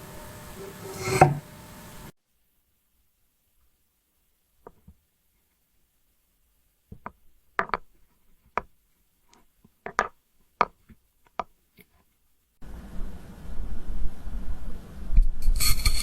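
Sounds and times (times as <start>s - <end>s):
blade scraping through glass: 0.6s - 1.4s.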